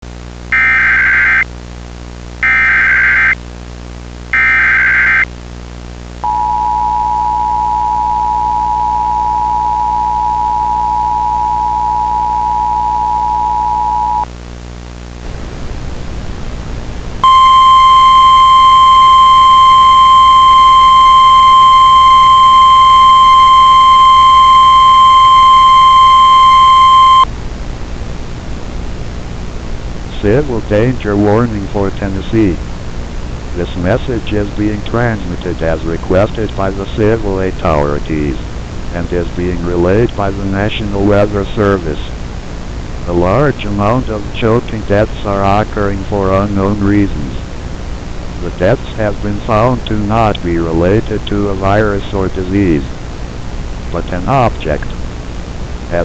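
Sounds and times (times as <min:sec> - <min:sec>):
static: 0:00.0 - 0:56.0
digital header tone bursts: 0:00.5 - 0:01.4, 0:02.4 - 0:03.4, 0:04.4 - 0:05.2, 0:17.2 - 0:27.2
single-tone warning alarm: 0:00.6 - 0:01.4, 0:02.4 - 0:03.4, 0:04.4 - 0:05.2, 0:06.2 - 0:14.2, 0:17.2 - 0:27.3
two-tone attention signal: 0:00.6 - 0:01.4, 0:02.4 - 0:03.4, 0:04.4 - 0:05.2, 0:06.2 - 0:14.2, 0:17.2 - 0:27.3.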